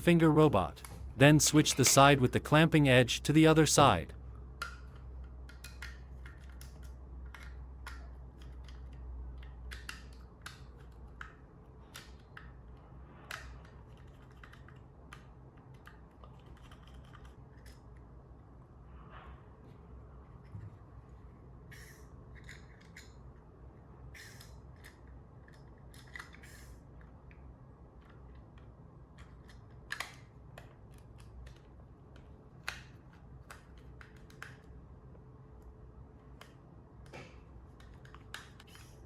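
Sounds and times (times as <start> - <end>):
low steady hum: 0.0 - 5.3
small plastic clicks and snaps: 4.6 - 12.6, 28.0 - 34.8, 36.2 - 39.0.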